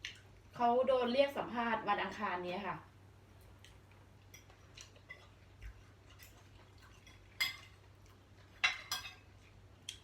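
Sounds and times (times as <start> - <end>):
cutlery and dishes clinking: 6.2 - 7.8, 8.5 - 9.4.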